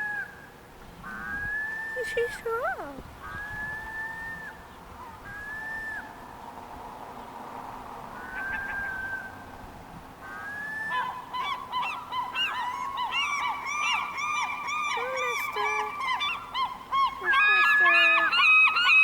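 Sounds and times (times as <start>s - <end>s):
gulls calling: 0.0s - 6.3s, 8.1s - 9.5s, 10.2s - 19.0s
gulls laughing long call: 10.3s - 19.0s.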